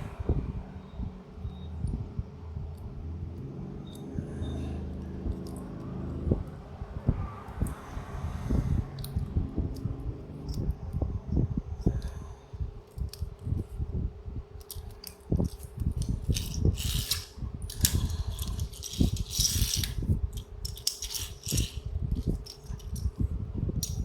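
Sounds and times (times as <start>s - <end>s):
steady low hum: 0.0s - 24.0s
toy cars clicking and tapping: 14.6s - 23.1s.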